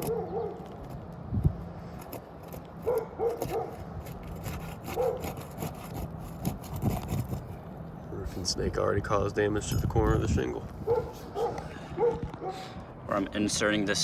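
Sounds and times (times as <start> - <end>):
roofing tool scraping shingles: 2.0 - 7.5
shingle tearing: 2.0 - 7.6.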